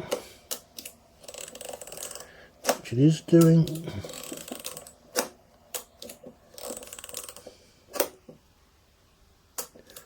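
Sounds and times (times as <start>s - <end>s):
camera film advance ratcheting: 1.2s - 2.3s, 4.0s - 5.0s, 6.0s - 7.5s.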